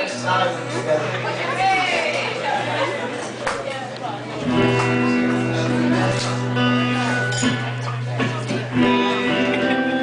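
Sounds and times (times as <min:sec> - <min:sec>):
guitar chords strummed: 0:04.4 - 0:10.0.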